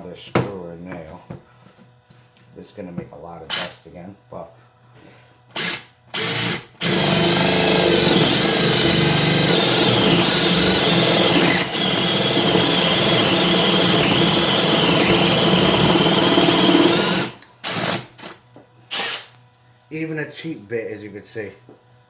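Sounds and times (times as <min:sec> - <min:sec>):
drill boring into wood: 0:05.6 - 0:19.3.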